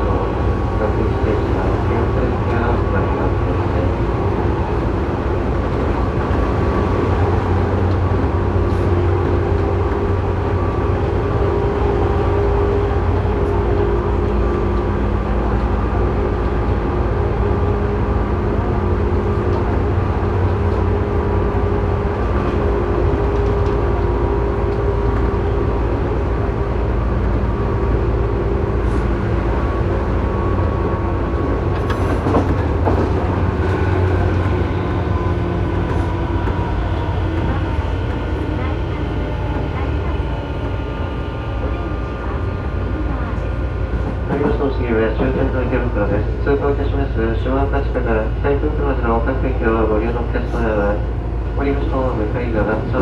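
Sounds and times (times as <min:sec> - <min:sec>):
train low rumble: 0:00.0 - 0:53.0
chopper controller whine: 0:29.9 - 0:46.8.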